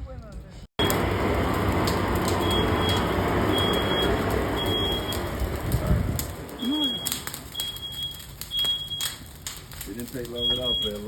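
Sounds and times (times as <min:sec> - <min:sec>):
smoke alarm beeping: 0:02.3 - 0:05.5, 0:06.6 - 0:09.3, 0:10.3 - 0:11.0.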